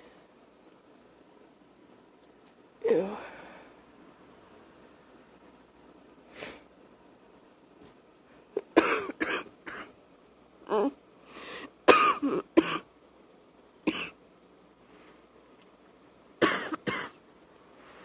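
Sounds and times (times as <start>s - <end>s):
woman coughing: 8.6s - 9.9s, 11.9s - 12.8s, 13.9s - 14.2s, 16.4s - 17.2s.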